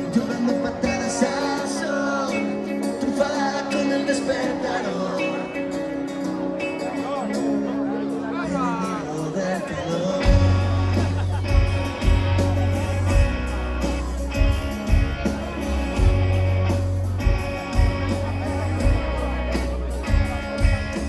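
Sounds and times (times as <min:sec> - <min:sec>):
electric guitar: 0:00.0 - 0:21.0
drums keeping a beat: 0:08.9 - 0:21.0
heavy bass notes: 0:10.2 - 0:21.0.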